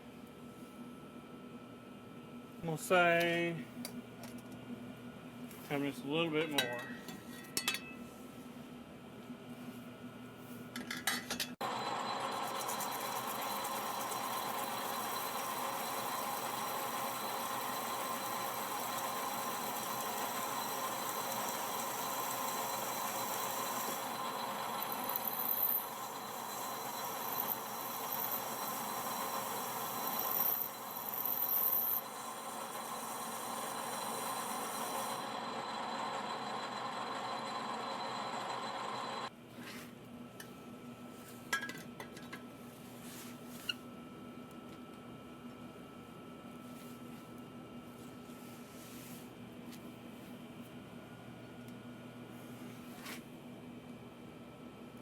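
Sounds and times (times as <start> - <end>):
high-pitched cutter squeal: 11.6 - 39.3
machine tool running: 11.6 - 39.3.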